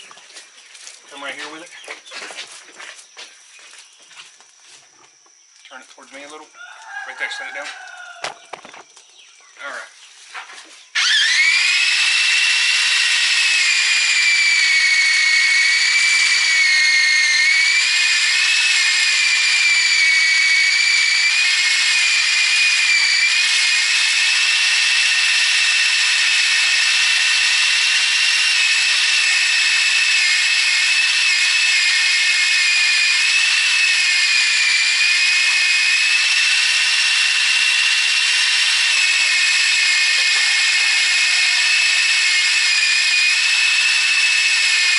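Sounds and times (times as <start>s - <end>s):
electric drill whining: 11.0s - 44.9s.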